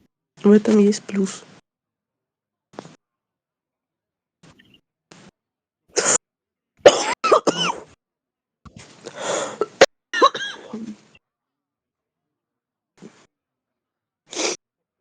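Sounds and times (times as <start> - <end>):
person coughing: 6.9 - 7.9, 9.6 - 10.9.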